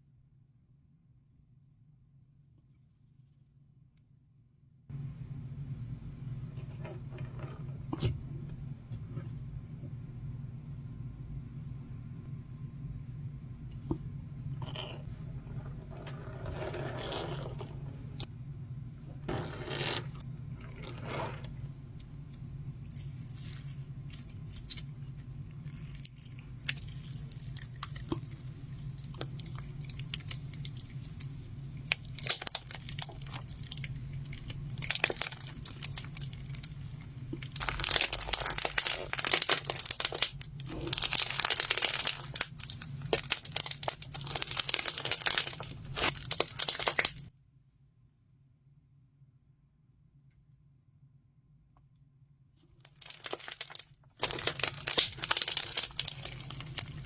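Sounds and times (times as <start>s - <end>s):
slime clicking and crackling: 22.8s - 47.3s, 52.8s - 57.0s.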